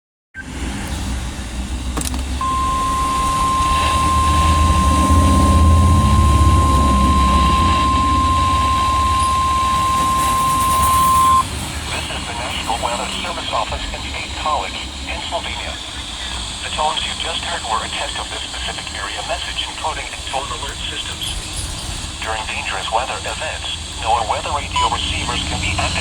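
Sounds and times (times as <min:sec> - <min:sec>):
steady high alert tone: 0:02.4 - 0:11.4
loud low rumble: 0:02.4 - 0:12.4.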